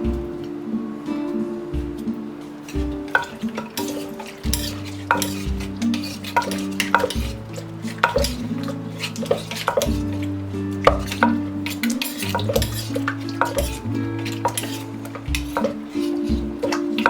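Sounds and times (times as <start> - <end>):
soft guitar music: 0.0 - 17.0
pestle knocking in a mortar: 2.9 - 10.3, 10.9 - 17.0.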